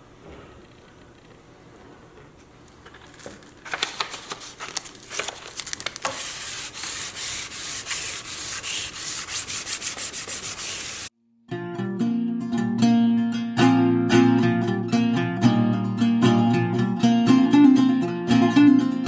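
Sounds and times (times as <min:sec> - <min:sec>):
abrasive rubbing on wood: 0:06.0 - 0:11.1
scrapes on wood: 0:06.0 - 0:11.1.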